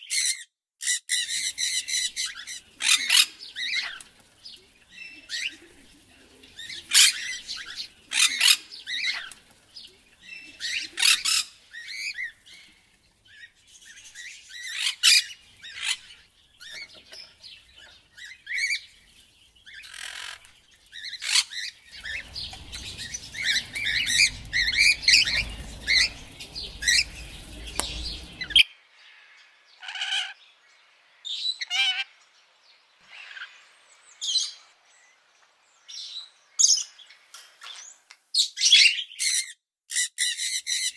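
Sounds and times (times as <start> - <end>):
parrots calling: 0.0 - 28.6, 38.6 - 40.9
low rumble: 21.8 - 28.6.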